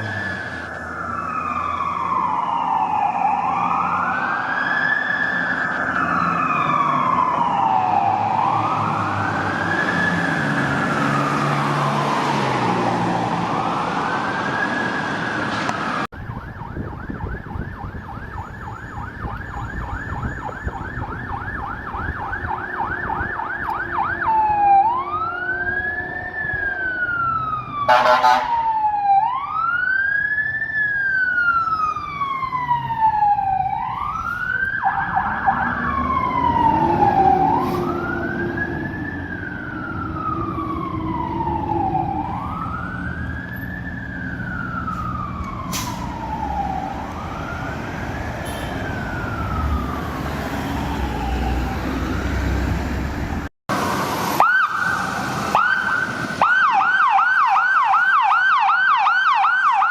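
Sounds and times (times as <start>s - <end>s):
emergency vehicle siren: 0.0s - 59.9s
short loud horn blast: 27.9s - 28.6s, 48.4s - 48.8s.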